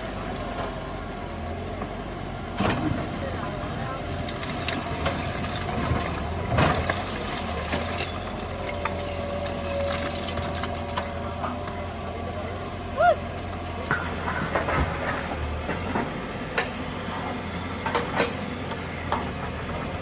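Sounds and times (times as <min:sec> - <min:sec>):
diesel engine running: 0:00.0 - 0:20.0
knocks and clunk: 0:03.8 - 0:09.1, 0:13.9 - 0:20.0.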